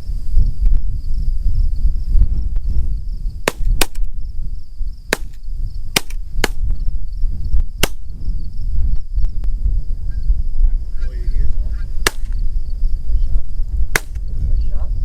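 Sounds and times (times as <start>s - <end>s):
wind noise on microphone: 0.0s - 15.0s
shotgun shots: 3.5s - 4.1s, 5.1s - 5.4s, 6.0s - 6.7s, 12.0s - 12.4s, 14.0s - 14.2s.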